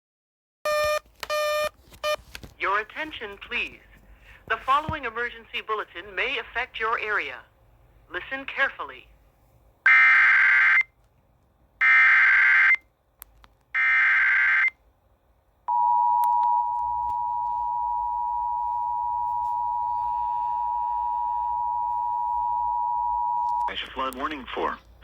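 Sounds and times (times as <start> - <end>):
two-tone attention signal: 15.7 - 23.7.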